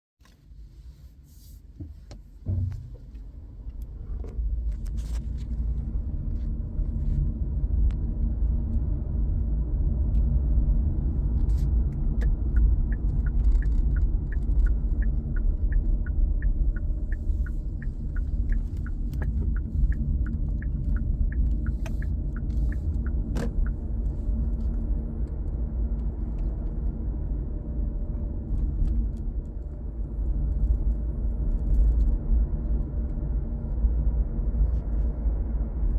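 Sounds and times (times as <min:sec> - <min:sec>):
car low rumble: 0:00.2 - 0:35.9
light regular ticks: 0:12.2 - 0:24.8.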